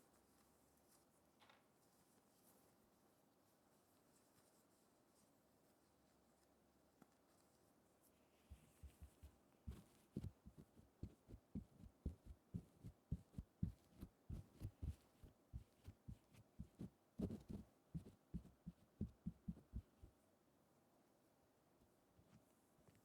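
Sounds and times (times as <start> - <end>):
soft low taps: 8.5 - 20.2.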